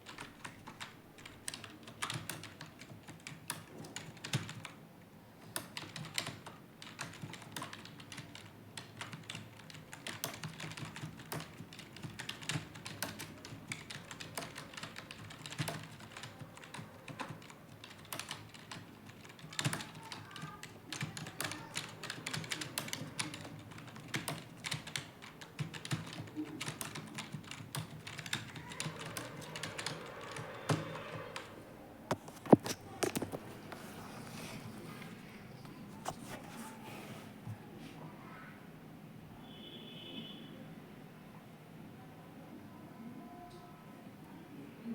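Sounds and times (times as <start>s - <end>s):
fast typing on keyboard: 0.0s - 4.8s, 5.5s - 35.1s.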